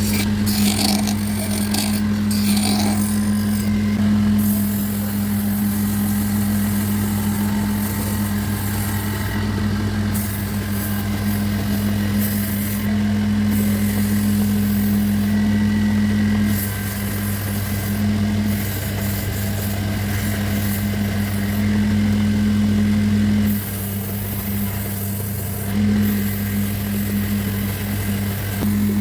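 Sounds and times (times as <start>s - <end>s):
tool hissing into wood: 0.0s - 3.8s
woodworking machine humming: 0.0s - 29.0s.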